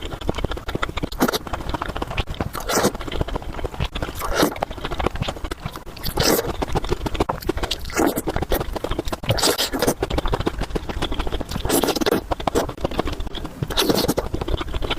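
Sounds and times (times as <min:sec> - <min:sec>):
wet chewing and mouth clicks: 0:00.0 - 0:14.9.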